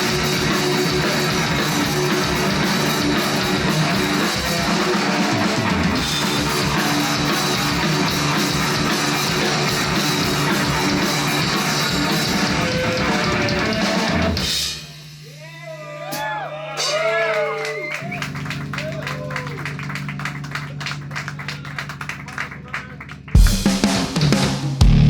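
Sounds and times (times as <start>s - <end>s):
rock band playing: 0.0s - 15.3s, 23.3s - 25.0s.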